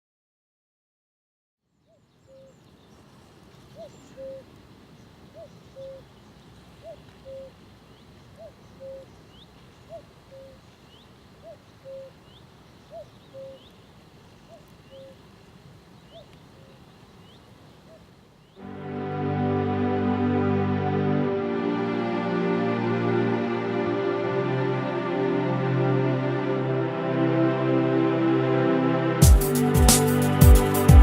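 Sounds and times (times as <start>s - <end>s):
faint high bird chirps: 1.7s - 13.8s, 14.4s - 15.2s.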